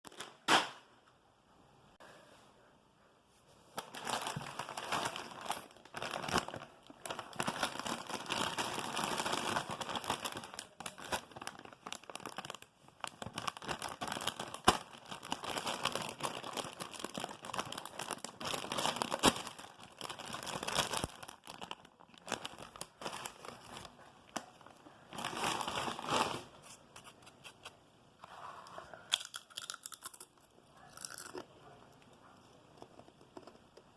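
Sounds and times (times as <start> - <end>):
crisp bag crinkling: 3.8 - 27.7.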